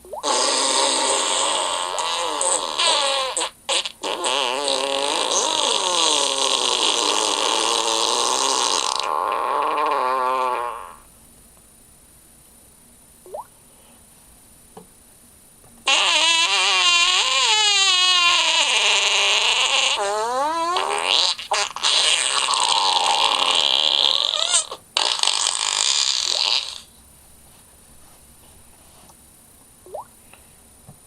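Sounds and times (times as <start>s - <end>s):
long loud fart: 0.1s - 11.1s, 15.8s - 26.9s.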